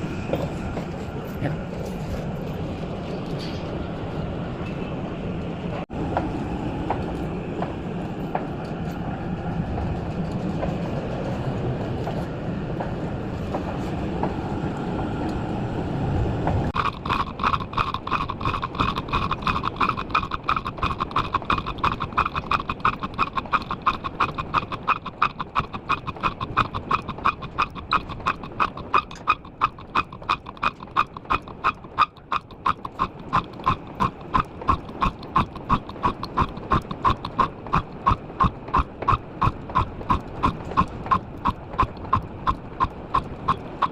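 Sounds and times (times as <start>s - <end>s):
rapid metallic knocking: 16.8s - 43.9s.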